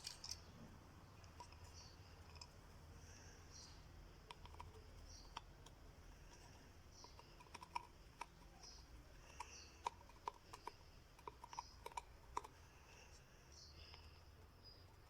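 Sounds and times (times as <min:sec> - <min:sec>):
small clicks and taps: 0:04.2 - 0:14.2.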